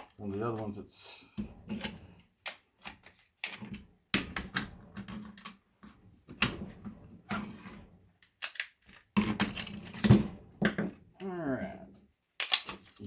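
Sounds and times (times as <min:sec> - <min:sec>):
hand tools clicking on casing: 0:12.4 - 0:13.0.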